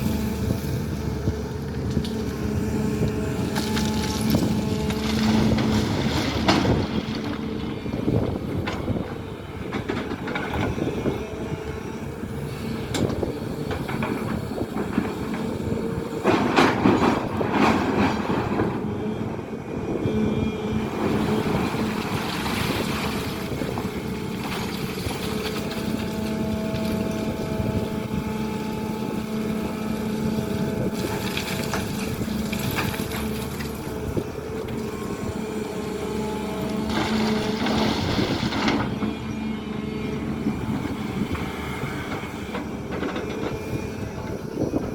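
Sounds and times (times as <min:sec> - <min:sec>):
excavator diesel engine running: 0:00.0 - 0:44.9.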